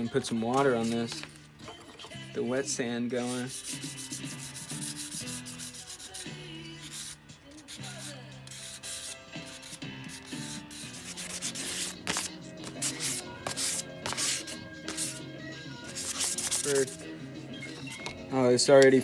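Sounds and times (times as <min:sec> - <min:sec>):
sandpaper rubbing: 0:03.2 - 0:15.2, 0:15.8 - 0:17.0.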